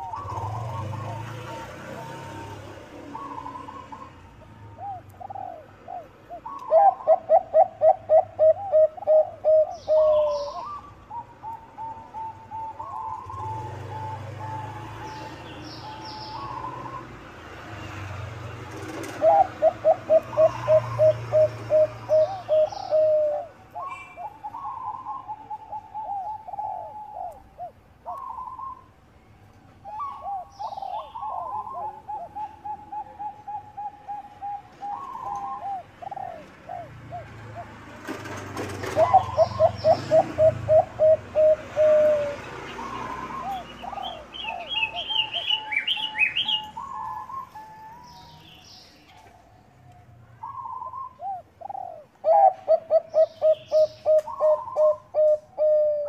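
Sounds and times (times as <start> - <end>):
doves cooing: 0.0 - 17.3, 18.6 - 29.0, 29.8 - 56.0.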